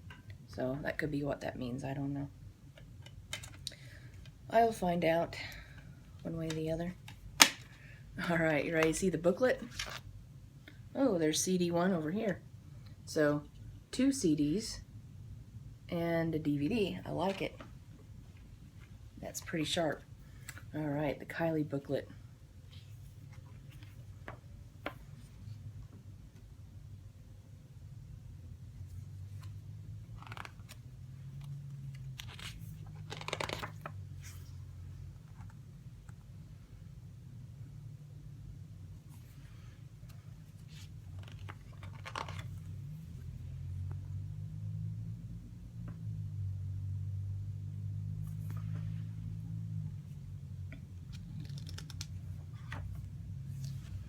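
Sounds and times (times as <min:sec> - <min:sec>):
steady low hum: 0:00.0 - 0:54.0
paper pages rustling: 0:29.2 - 0:30.9, 0:31.9 - 0:34.6, 0:40.0 - 0:42.8, 0:51.0 - 0:54.0.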